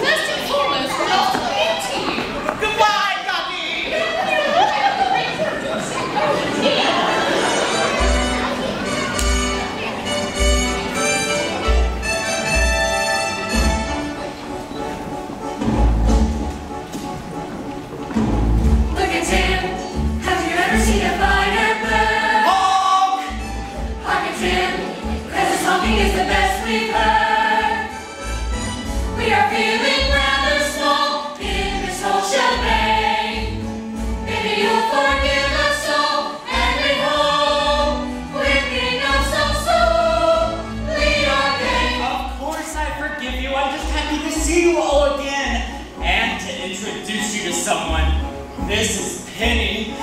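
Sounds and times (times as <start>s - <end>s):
instrumental accompaniment: 7.2s - 50.0s
chorus singing: 18.5s - 42.4s.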